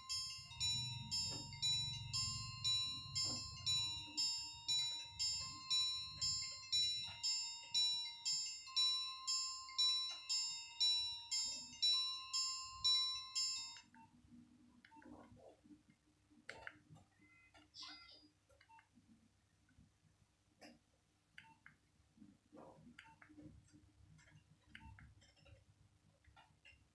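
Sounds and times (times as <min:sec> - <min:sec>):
phone ringtone melody: 0:00.0 - 0:13.9.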